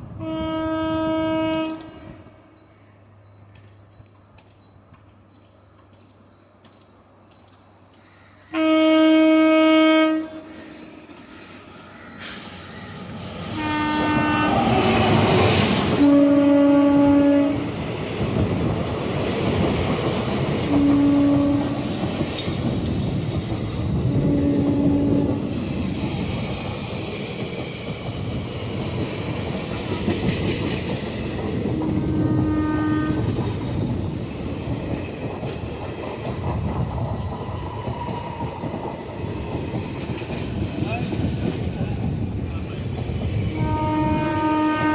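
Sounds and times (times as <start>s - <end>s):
train horn blasts: 0.2s - 2.5s, 8.5s - 10.6s, 13.4s - 15.3s, 15.9s - 17.7s, 20.7s - 21.8s, 24.1s - 25.5s, 31.7s - 33.4s, 43.5s - 44.9s
train wheels clattering on rails: 3.3s - 8.2s, 10.5s - 44.9s.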